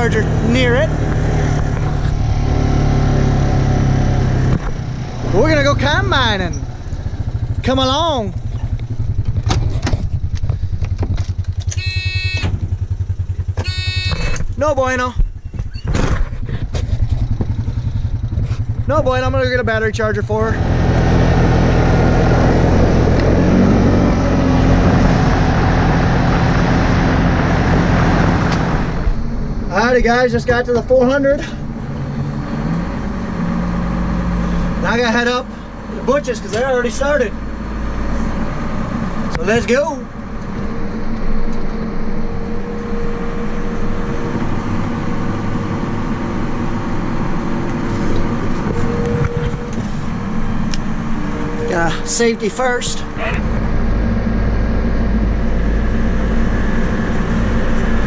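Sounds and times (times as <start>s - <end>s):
road and wind noise: 0.0s - 58.0s
vehicle engine running steadily: 0.0s - 58.0s
steady hum: 25.4s - 36.4s, 37.0s - 58.0s.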